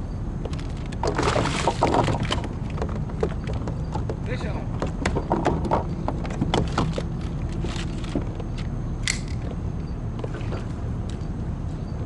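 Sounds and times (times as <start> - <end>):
low background rumble: 0.0 - 12.0.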